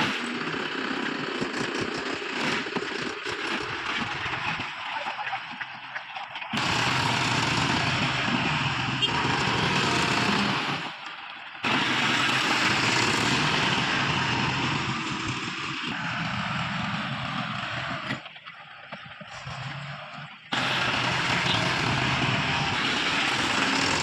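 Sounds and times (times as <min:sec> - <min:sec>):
heavy vehicle engine running: 0:06.5 - 0:18.3, 0:19.2 - 0:24.0.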